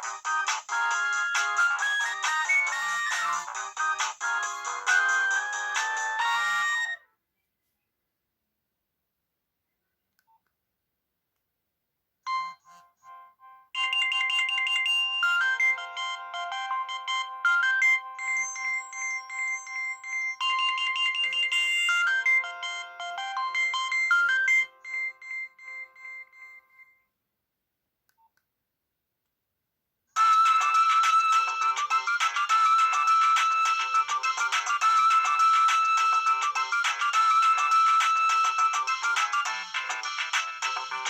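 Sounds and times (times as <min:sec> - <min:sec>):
electronic phone ringtone melody: 0:00.0 - 0:07.1, 0:12.3 - 0:27.0, 0:30.2 - 0:41.0.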